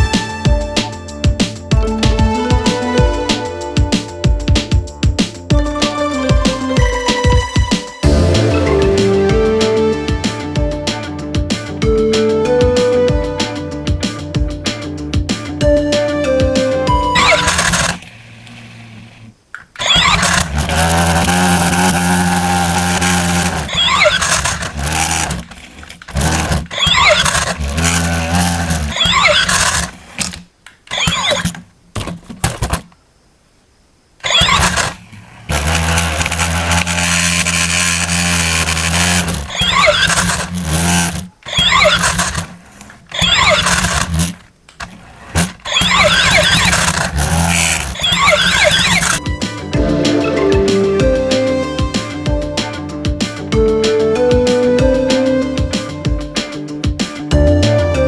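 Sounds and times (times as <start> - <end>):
toy vehicle engine sound effects: 17.2 - 31.6, 34.2 - 49.2.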